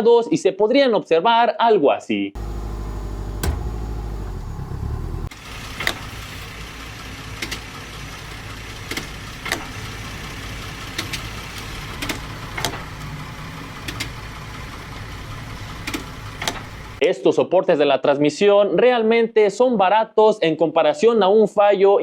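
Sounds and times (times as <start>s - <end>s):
car engine running: 2.4s - 17.0s.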